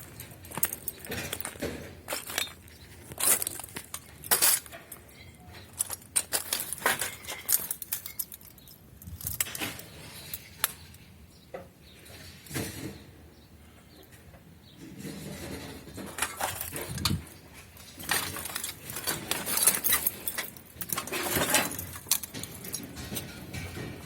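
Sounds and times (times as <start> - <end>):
hard objects clinking together: 0.0 - 10.8, 16.1 - 24.0.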